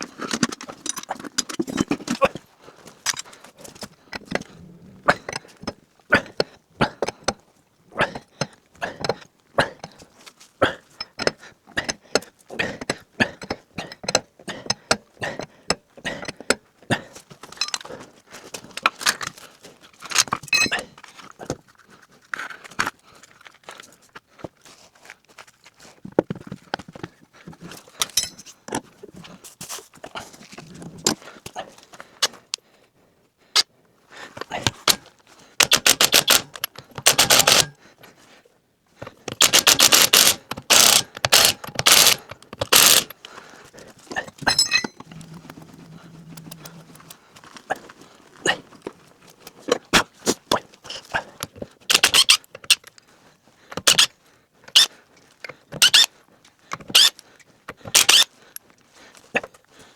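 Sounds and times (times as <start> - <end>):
metallic clinks and knocks from tools: 17.5 - 17.9, 20.3 - 21.0, 28.0 - 28.6, 44.4 - 47.2.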